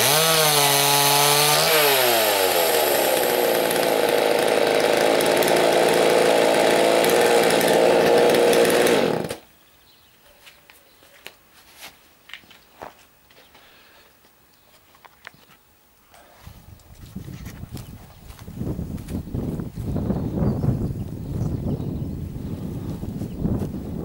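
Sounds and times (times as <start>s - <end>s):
chainsaw engine running: 0.0s - 9.4s.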